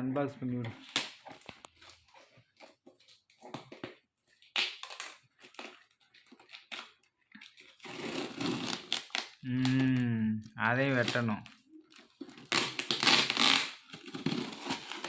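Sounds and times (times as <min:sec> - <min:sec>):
packaging crinkling rustle: 0:00.8 - 0:10.0
packaging being cut and torn: 0:04.4 - 0:10.1, 0:10.9 - 0:15.0.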